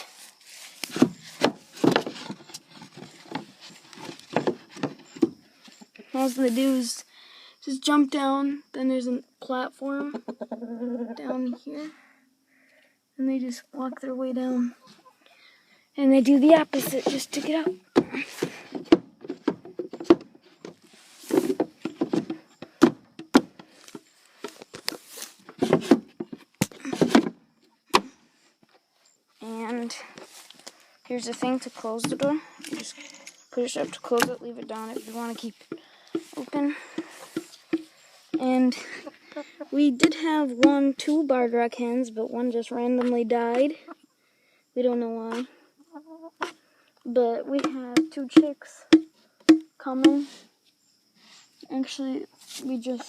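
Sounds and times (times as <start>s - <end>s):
chickens clucking: 9.8s - 11.9s, 13.8s - 15.4s, 30.2s - 40.8s, 42.9s - 44.2s, 45.0s - 46.6s.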